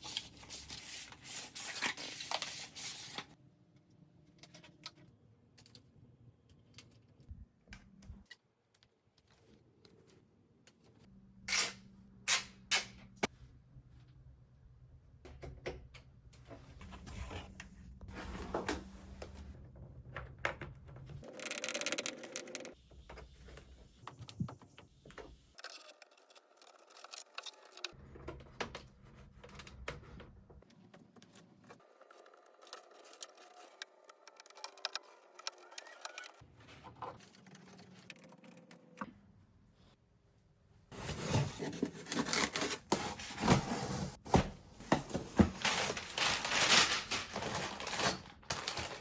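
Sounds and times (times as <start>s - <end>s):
rustling and scraping: 40.9s - 49.0s.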